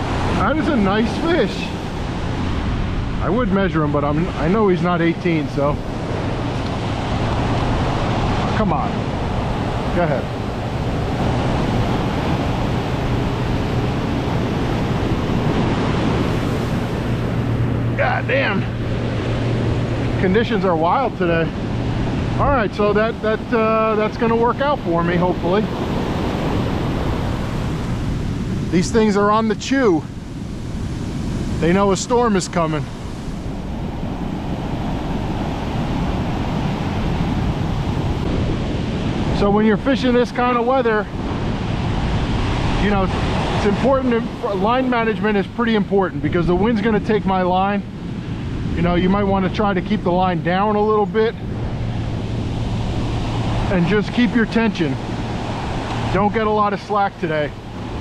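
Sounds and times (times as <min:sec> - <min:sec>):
storm surf breaking: 0:00.0 - 0:58.0
wind on microphone: 0:00.0 - 0:58.0.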